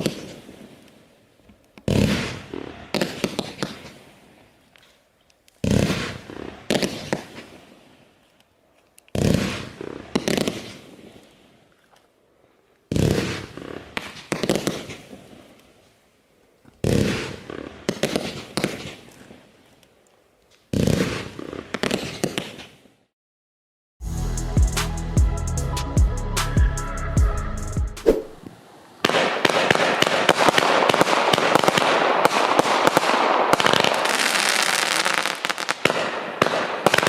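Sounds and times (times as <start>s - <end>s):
firework bangs: 0.0s - 0.9s, 1.8s - 4.3s, 5.6s - 8.0s, 9.1s - 11.2s, 12.9s - 15.5s, 16.8s - 19.4s, 20.7s - 22.9s, 28.0s - 37.0s
firework crackling: 0.0s - 1.2s, 1.8s - 4.6s, 5.6s - 8.2s, 9.1s - 11.7s, 12.9s - 16.0s, 16.8s - 19.8s, 20.7s - 23.0s, 28.0s - 37.0s
music: 24.0s - 28.1s.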